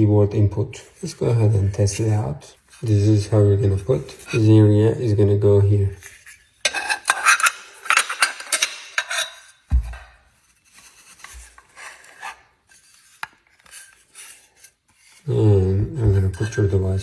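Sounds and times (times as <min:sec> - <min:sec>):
hard plastic parts scraping: 0:05.9 - 0:15.3
low thump: 0:09.7 - 0:10.2.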